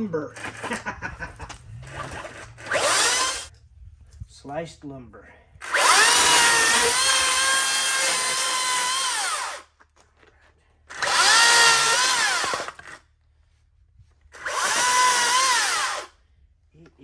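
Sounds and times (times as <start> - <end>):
electric chainsaw cutting wood: 0.4 - 3.5, 5.6 - 9.7, 10.9 - 13.0, 14.4 - 16.2.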